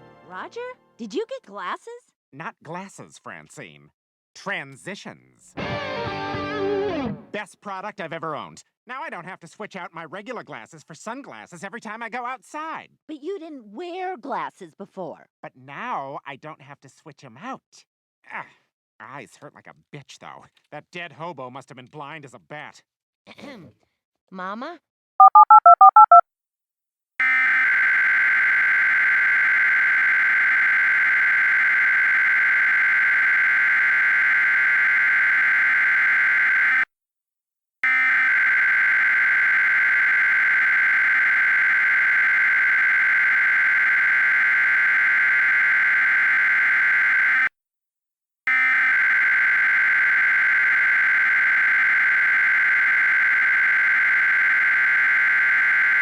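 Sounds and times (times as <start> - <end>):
buzzy digital data tone: 25.2 - 26.2, 27.2 - 36.8, 37.8 - 47.5, 48.5 - 56.0.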